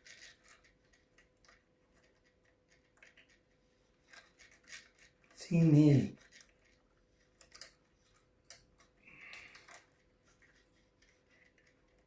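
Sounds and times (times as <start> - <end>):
small metal clicks: 0.0 - 5.6, 6.2 - 12.0.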